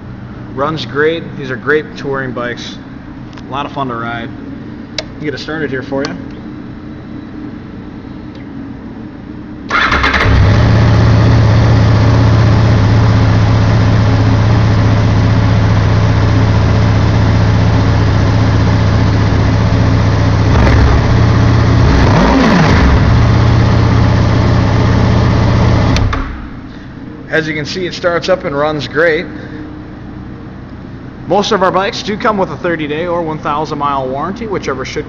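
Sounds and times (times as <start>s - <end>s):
motorcycle engine idling and revving: 9.7s - 26.4s.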